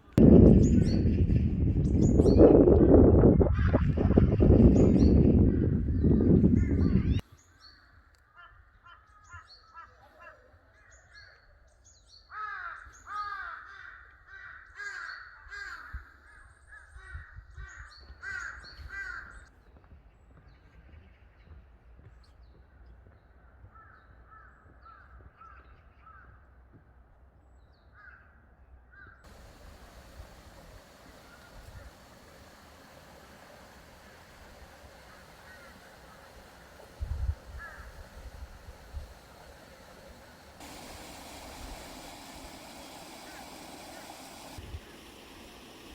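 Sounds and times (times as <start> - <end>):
crows cawing: 12.3 - 15.9.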